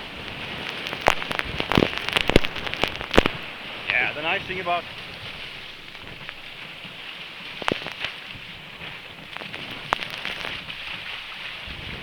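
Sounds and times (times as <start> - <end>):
steady hiss: 0.0 - 8.3
water splashing and dripping: 0.0 - 12.0.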